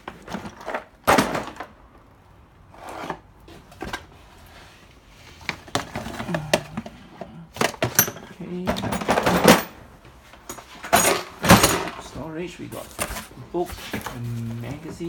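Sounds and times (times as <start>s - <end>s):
clatter and scraping: 0.0s - 1.7s
items knocking and thudding: 0.0s - 2.0s, 5.4s - 15.0s.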